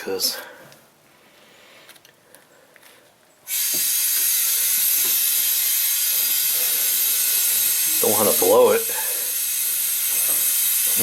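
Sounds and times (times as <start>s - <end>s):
compressed air hissing: 3.5s - 11.0s.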